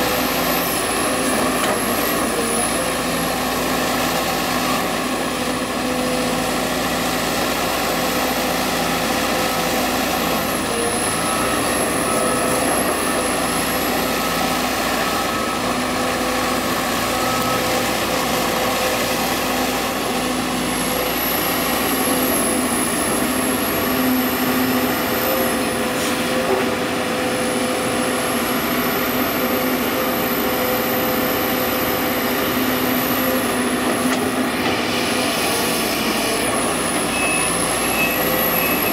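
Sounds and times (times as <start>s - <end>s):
excavator diesel engine running: 0.0s - 38.9s.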